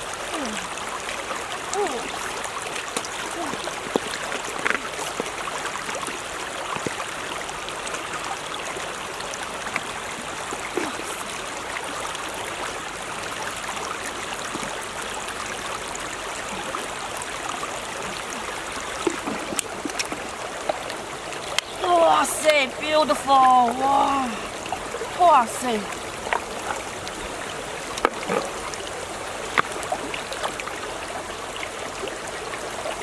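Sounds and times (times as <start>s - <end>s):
running water rushing: 0.0s - 33.0s.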